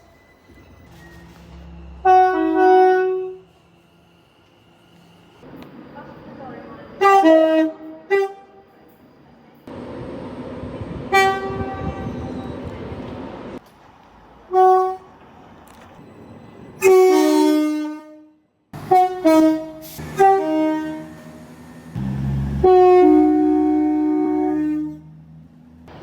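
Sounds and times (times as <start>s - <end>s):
train horn blasts: 1.9s - 3.6s, 7.0s - 8.7s, 11.1s - 12.7s, 14.5s - 15.1s, 16.8s - 25.2s.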